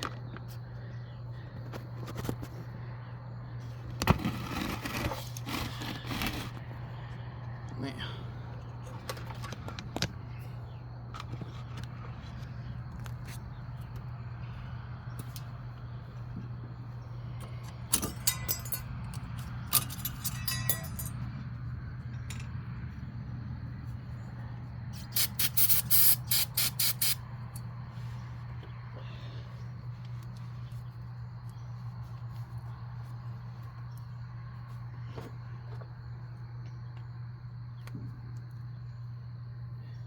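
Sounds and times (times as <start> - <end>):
steady low hum: 0.0 - 40.0
metal tools clinking on car parts: 17.4 - 21.5, 22.2 - 22.6.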